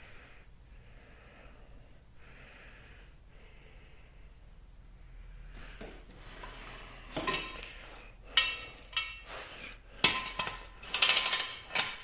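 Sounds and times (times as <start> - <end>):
metal parts clanking: 7.1 - 9.3, 10.0 - 12.0.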